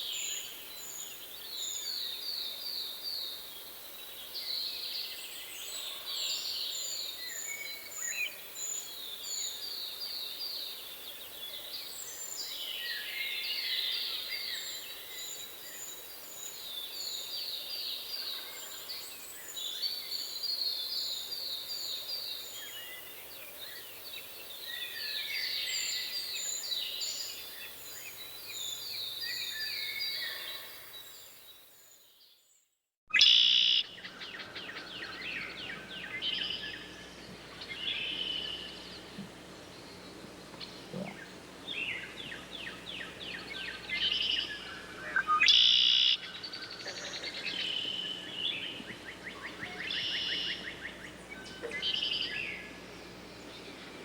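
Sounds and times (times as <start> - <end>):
songbirds chirping and trilling: 33.2 - 54.0.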